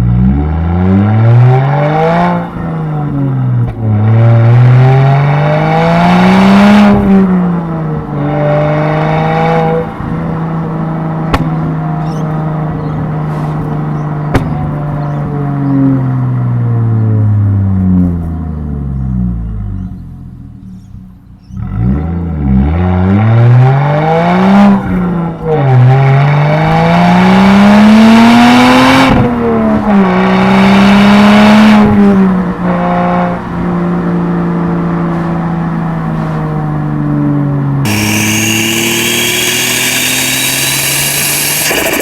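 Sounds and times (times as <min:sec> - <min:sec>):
car engine revving hard: 0:00.1 - 0:13.7, 0:21.6 - 0:33.4, 0:37.8 - 0:42.0
hiss: 0:37.9 - 0:42.0.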